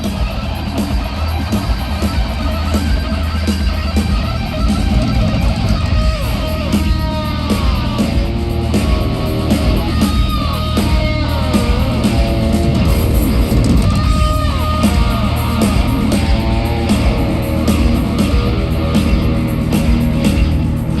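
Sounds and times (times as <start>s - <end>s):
electric guitar bent and sliding notes: 0.0s - 21.0s
low bass rumble: 0.0s - 21.0s.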